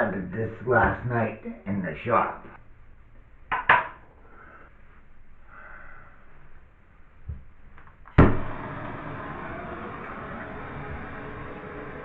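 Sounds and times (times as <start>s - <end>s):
torch lighting with a pop: 7.8s - 12.0s
torch hissing: 8.2s - 12.0s.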